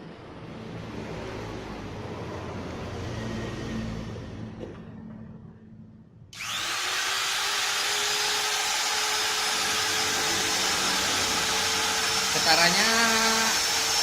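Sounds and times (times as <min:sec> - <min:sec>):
wood trimmer whining: 0:06.4 - 0:14.0.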